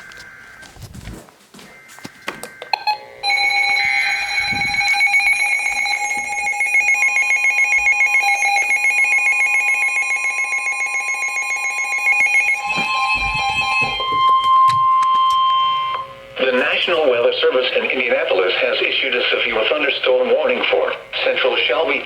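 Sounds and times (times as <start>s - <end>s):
pulsing electronic alarm tone: 1.7s - 16.4s.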